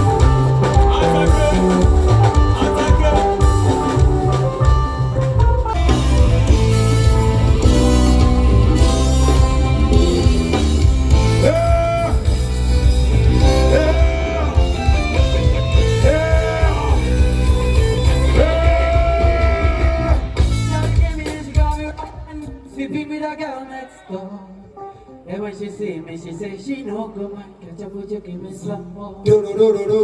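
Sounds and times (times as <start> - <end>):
band with heavy bass and guitar: 0.0 - 23.2.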